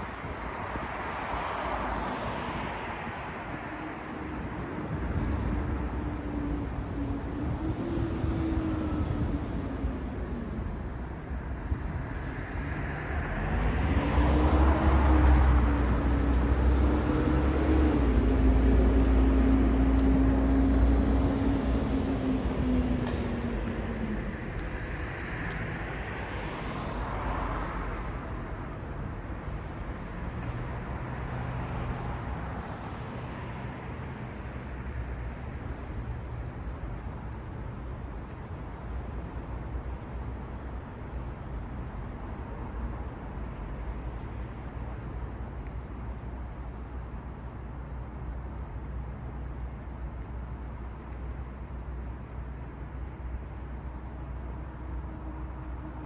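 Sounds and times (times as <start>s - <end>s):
traffic noise: 0.0s - 56.0s.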